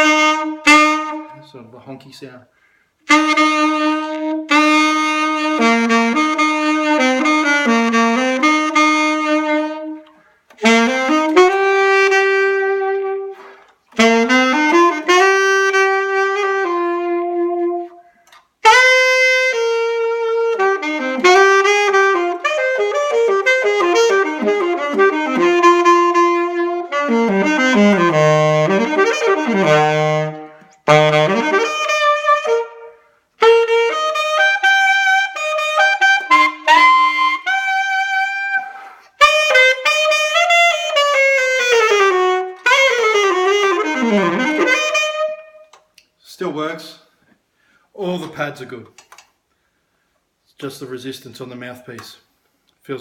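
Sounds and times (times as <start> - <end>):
saxophone playing scales: 0.0 - 1.8, 2.5 - 47.2
player breaths: 2.5 - 3.0, 10.1 - 10.6, 38.6 - 39.2, 47.2 - 47.9, 49.5 - 50.3.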